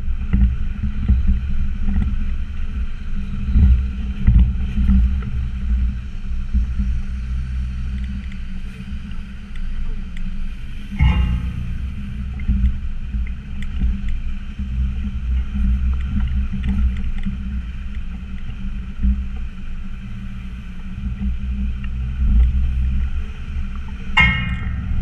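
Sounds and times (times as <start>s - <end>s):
knocks and rattles: 11.0s - 12.8s
diesel engine rumbling: 11.0s - 16.0s, 24.2s - 25.0s.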